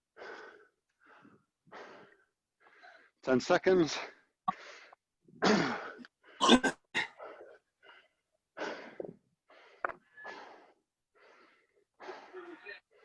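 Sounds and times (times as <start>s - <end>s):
heavy ragged breathing: 0.1s - 3.2s, 7.2s - 13.0s.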